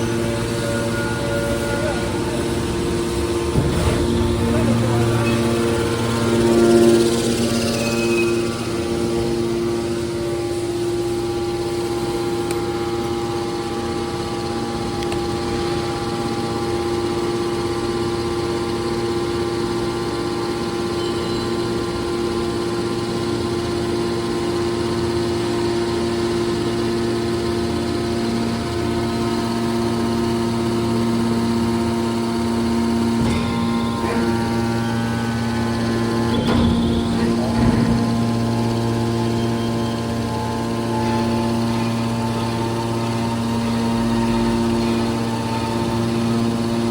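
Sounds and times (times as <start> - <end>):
baler machine humming: 0.0 - 17.0, 27.7 - 46.9.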